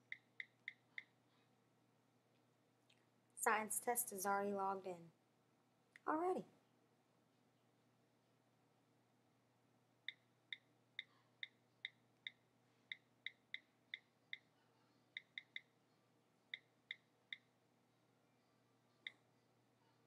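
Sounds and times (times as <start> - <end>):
keyboard click ticks: 15.2 - 15.6.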